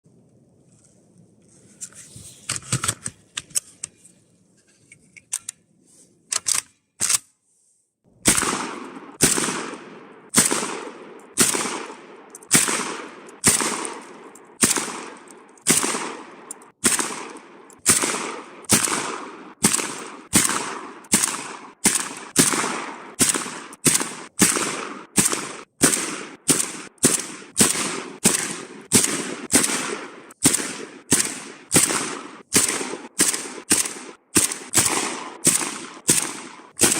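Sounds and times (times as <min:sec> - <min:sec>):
sharp clicks: 0:06.3 - 0:07.3, 0:16.4 - 0:18.0
shotgun shots: 0:08.2 - 0:36.9.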